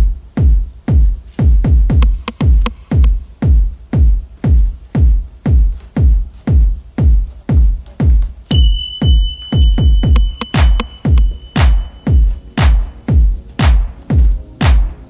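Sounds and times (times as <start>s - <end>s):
deep kick drum: 0.0s - 15.0s
electronic dance music: 0.0s - 15.0s
steady high synth tone: 8.5s - 13.6s.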